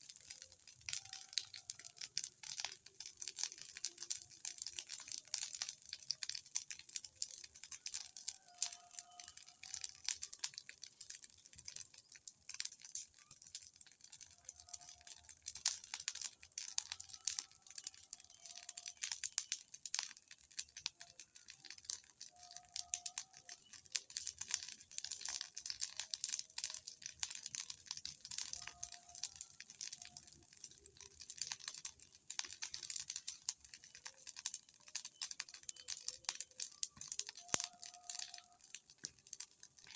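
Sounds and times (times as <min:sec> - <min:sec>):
bonfire crackling: 0:00.0 - 0:39.9.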